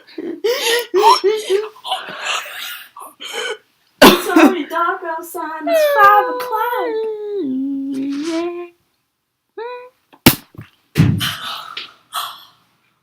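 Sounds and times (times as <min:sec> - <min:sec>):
loud sharp smack: 0:10.2 - 0:11.3
heavy thud: 0:10.3 - 0:11.4.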